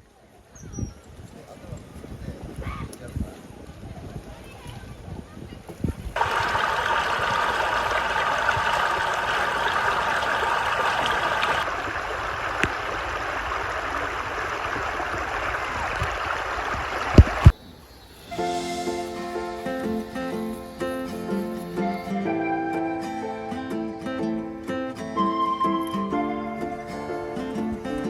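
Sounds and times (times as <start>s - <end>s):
river flowing over rocks: 6.2s - 17.5s.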